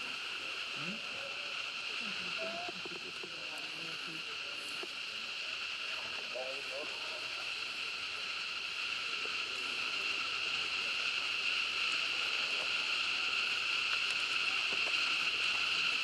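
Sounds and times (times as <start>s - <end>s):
insect chorus: 0.0s - 16.0s
faint ticks: 13.8s - 16.0s.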